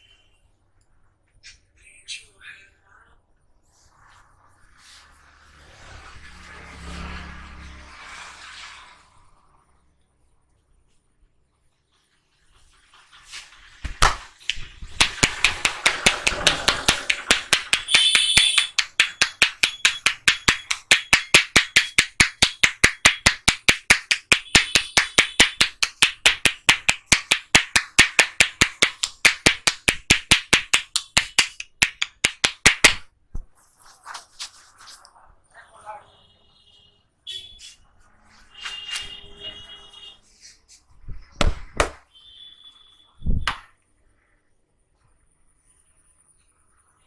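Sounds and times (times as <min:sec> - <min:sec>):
hands slapping a head: 0:13.3 - 0:35.0, 0:41.4 - 0:42.0, 0:43.4 - 0:43.7.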